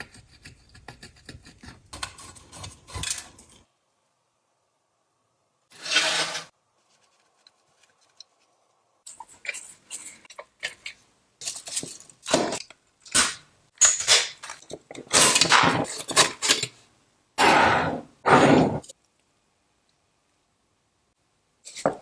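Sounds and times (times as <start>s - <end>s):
metal scraping and rubbing: 5.7s - 8.2s.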